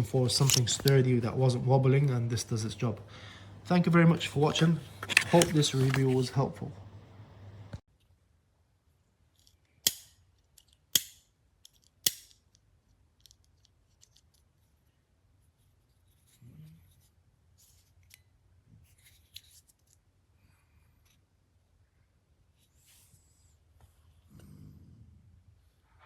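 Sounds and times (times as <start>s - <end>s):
soft rustle: 4.1s - 6.6s, 13.7s - 24.3s.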